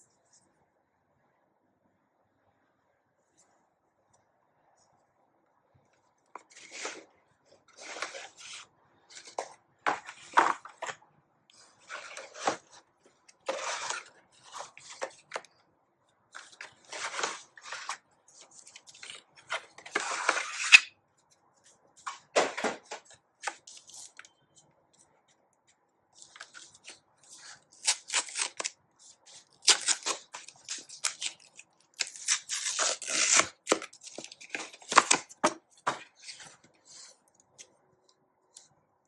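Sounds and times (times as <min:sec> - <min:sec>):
packaging rustling and tearing: 0:29.6 - 0:35.4.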